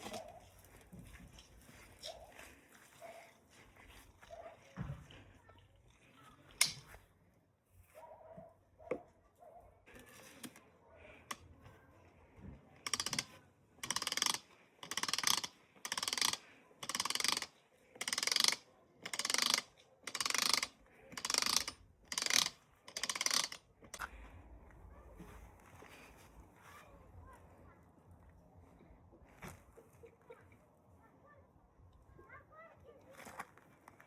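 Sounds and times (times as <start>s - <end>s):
jar seaming key ratcheting: 12.9s - 23.6s.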